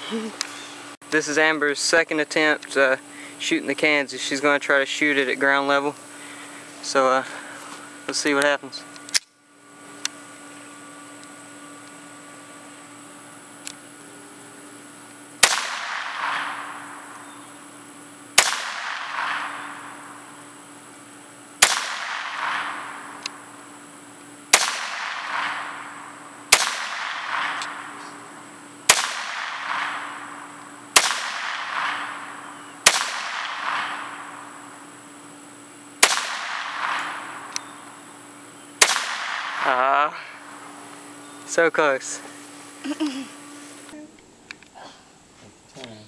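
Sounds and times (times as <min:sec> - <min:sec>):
pistol shots with echo: 0:15.4 - 0:17.2, 0:18.4 - 0:20.1, 0:21.6 - 0:23.2, 0:24.5 - 0:28.0, 0:28.9 - 0:34.5, 0:36.0 - 0:37.5, 0:38.8 - 0:39.8.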